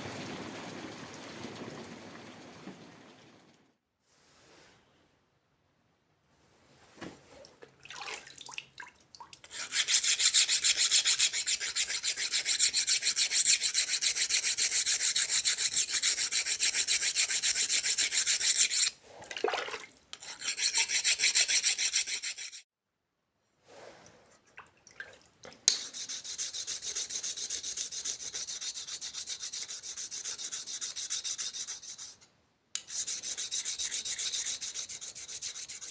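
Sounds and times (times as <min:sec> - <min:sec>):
hand file rasping on steel: 0:09.4 - 0:19.0, 0:20.1 - 0:22.7, 0:25.7 - 0:35.9.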